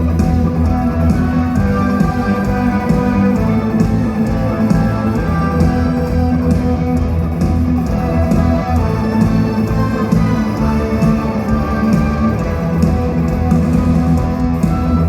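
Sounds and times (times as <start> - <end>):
electric guitar: 0.0 - 15.0
heavy bass: 0.0 - 15.0
live band playing: 0.0 - 15.0.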